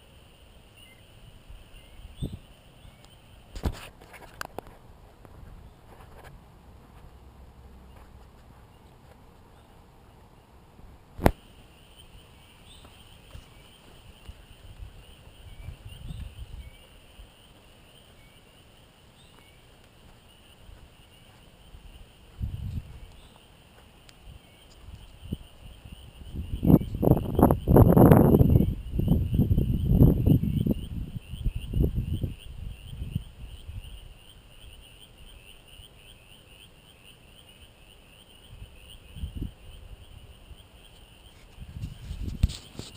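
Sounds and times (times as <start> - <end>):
high insect drone: 0.0 - 10.5, 11.1 - 42.9.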